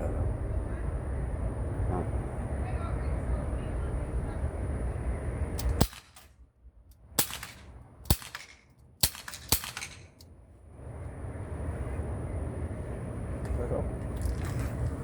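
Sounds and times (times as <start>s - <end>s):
bb pistol shots: 5.6s - 6.4s, 7.2s - 10.2s.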